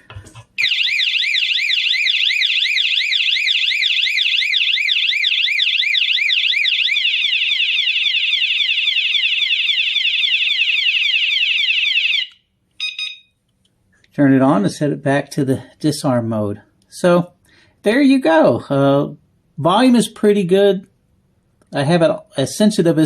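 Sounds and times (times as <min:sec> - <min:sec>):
bike alarm siren: 0:00.6 - 0:13.3.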